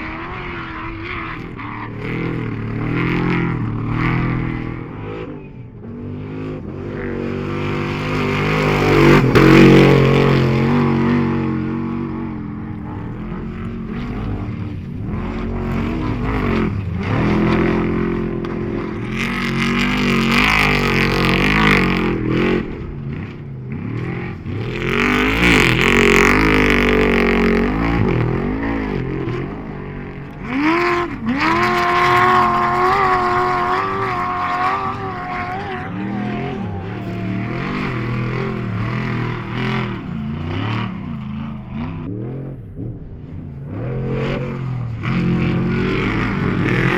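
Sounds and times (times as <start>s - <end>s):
race vehicle engines revving: 0.0s - 46.9s.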